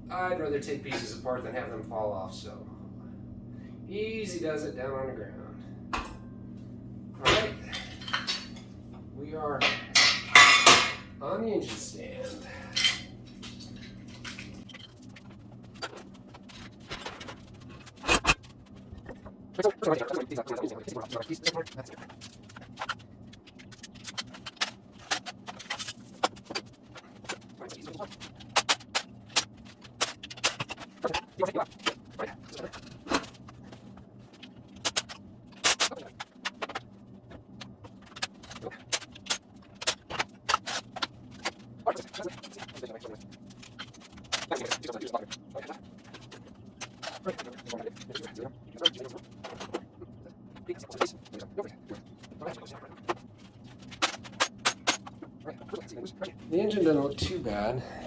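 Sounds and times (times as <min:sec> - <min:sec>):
steady low hum: 0:00.0 - 0:58.0
metal tools clinking: 0:07.4 - 0:08.7, 0:09.6 - 0:11.1, 0:12.2 - 0:15.0, 0:21.0 - 0:30.9
metallic clicks and rattles of tools: 0:07.7 - 0:08.7.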